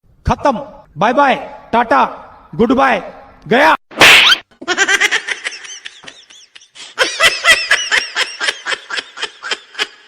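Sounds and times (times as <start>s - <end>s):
high-pitched cackling laugh: 4.6s - 10.0s.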